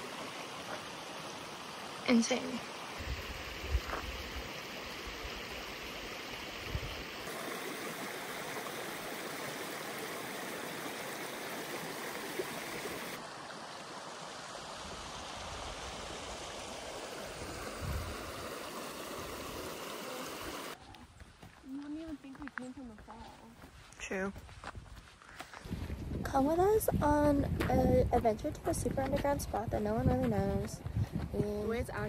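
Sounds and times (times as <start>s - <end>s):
waterfall rushing water: 0.0s - 20.8s.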